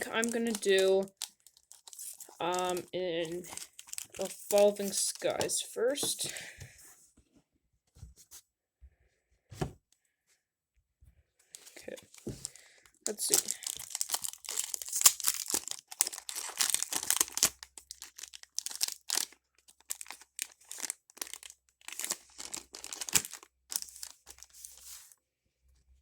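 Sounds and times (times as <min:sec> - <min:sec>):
foil wrapper crinkling and tearing: 0:00.0 - 0:06.2, 0:11.6 - 0:25.1.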